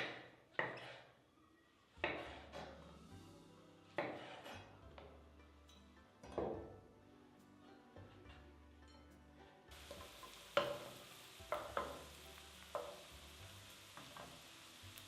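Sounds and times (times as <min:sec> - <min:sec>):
utensil scraping a pan: 0:00.6 - 0:01.2, 0:02.0 - 0:02.9, 0:03.9 - 0:04.8
food sizzling in a pan: 0:09.7 - 0:15.0.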